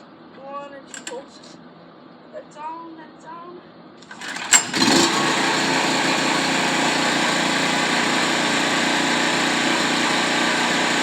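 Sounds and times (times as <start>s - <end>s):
generator engine running: 4.0s - 11.0s.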